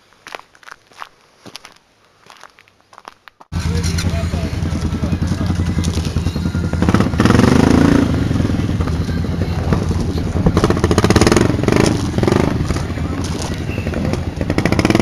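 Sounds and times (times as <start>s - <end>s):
atv engine revving: 3.5s - 15.0s.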